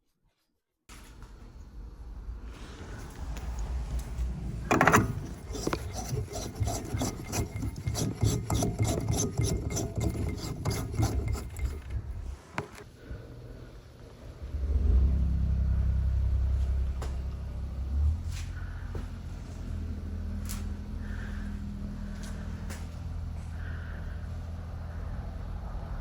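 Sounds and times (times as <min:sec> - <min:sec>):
scrubbing on a hard surface: 0:04.7 - 0:11.9.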